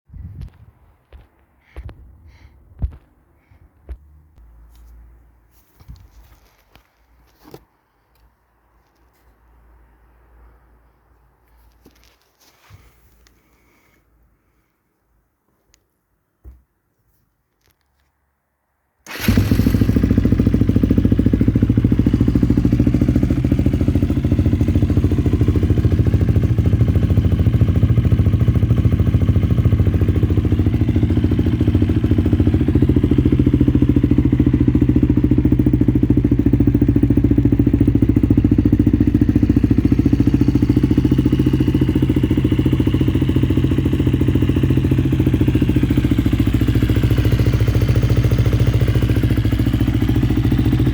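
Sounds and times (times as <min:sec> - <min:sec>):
motorcycle engine idling: 0:19.1 - 0:50.9.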